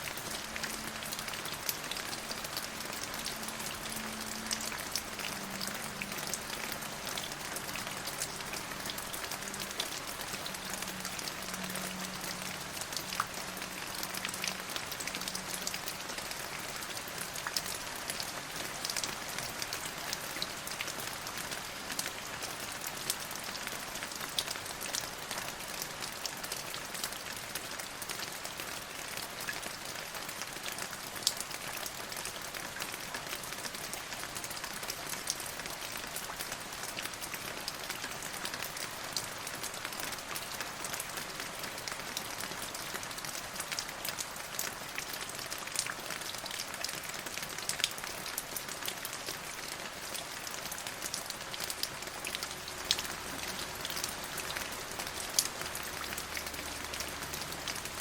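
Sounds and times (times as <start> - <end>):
rain drops ticking on hard surface: 0.0 - 58.0.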